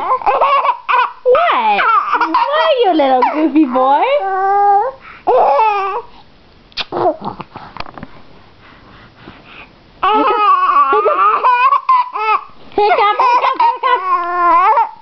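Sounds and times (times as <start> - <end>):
baby babbling and laughing: 0.0 - 6.1, 10.0 - 15.0.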